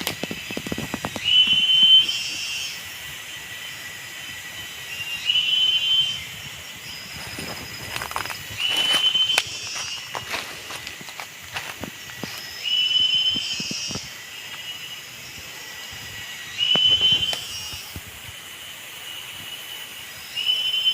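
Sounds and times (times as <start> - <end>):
twigs cracking underfoot: 0.0 - 1.6, 7.1 - 12.5
high insect buzz: 0.0 - 20.9
high whistling animal call: 1.2 - 2.8, 4.8 - 10.2, 12.5 - 14.0, 16.5 - 17.9, 20.2 - 20.9
footsteps through undergrowth: 6.8 - 14.7.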